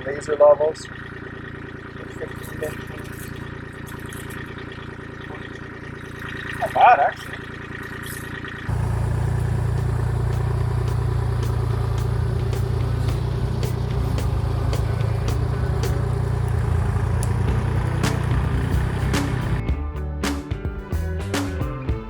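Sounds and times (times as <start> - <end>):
tractor diesel engine running: 0.0 - 19.6
implement scraping the ground: 2.1 - 19.6.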